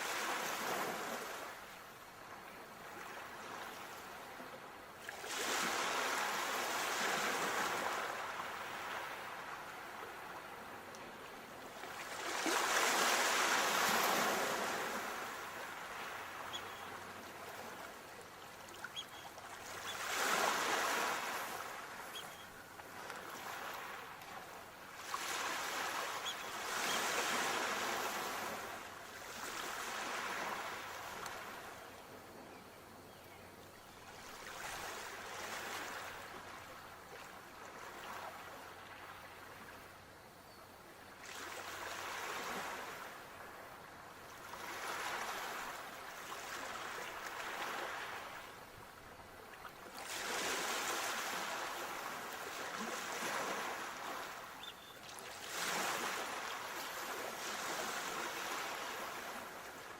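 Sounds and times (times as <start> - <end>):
sea waves washing onto shore: 11.7 - 31.8, 49.9 - 59.9.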